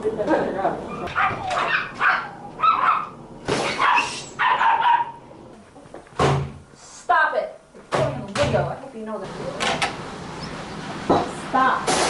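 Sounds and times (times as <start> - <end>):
puppy barking and yelping: 0.9 - 5.3.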